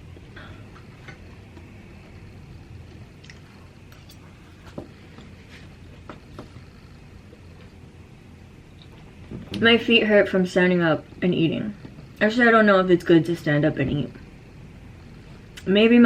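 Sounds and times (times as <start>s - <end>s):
low steady hum: 0.0s - 16.0s
person chewing food: 0.1s - 6.7s.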